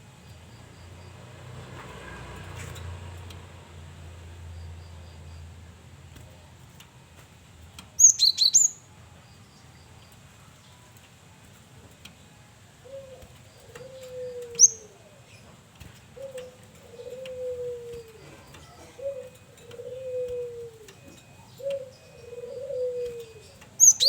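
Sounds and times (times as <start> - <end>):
bird sharp high calls: 8.0 - 8.8, 12.9 - 15.0, 16.2 - 24.0
falling cooing notes: 16.2 - 23.6.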